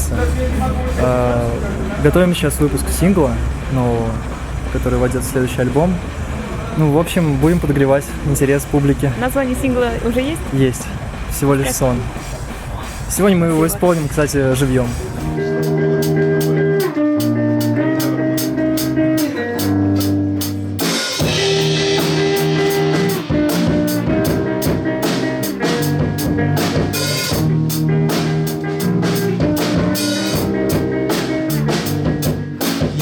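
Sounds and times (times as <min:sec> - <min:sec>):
drum kit steady beat: 0:00.0 - 0:02.4, 0:08.5 - 0:33.0
held guitar chords: 0:13.6 - 0:33.0.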